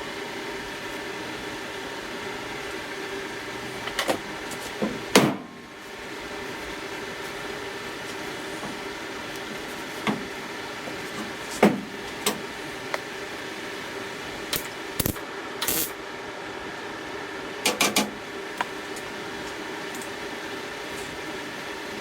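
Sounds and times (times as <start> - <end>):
welder crackling: 14.5 - 16.0
low welder hum: 14.5 - 19.2.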